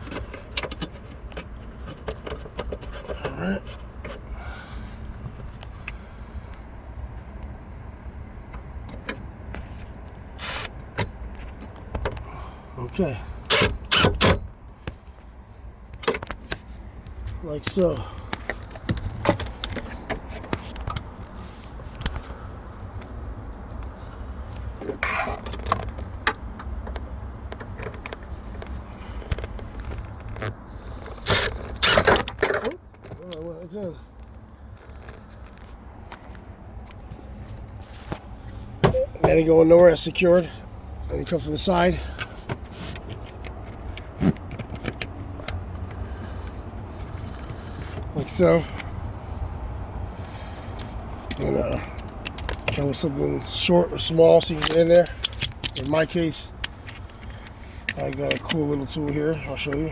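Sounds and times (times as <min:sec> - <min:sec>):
metal and plastic parts clicking: 0:54.5 - 0:58.6.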